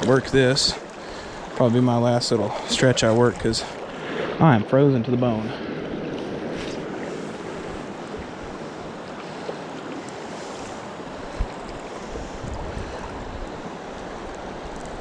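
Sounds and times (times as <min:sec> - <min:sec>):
rushing river water: 0:00.0 - 0:15.0
wind buffeting microphone: 0:10.4 - 0:15.0.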